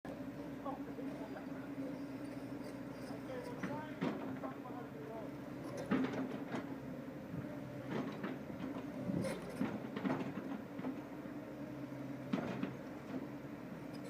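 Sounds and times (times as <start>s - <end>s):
excavator humming: 0.1s - 14.0s
metal clanks and knocks: 5.6s - 6.7s, 7.9s - 11.0s, 12.3s - 13.2s.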